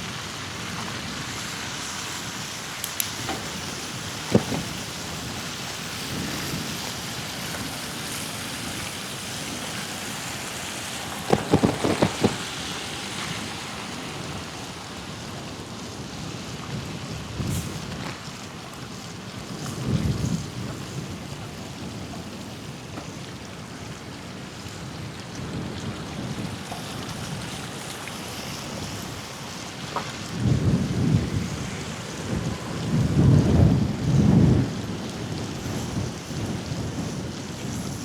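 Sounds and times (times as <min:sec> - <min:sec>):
wind buffeting microphone: 0:00.0 - 0:38.0.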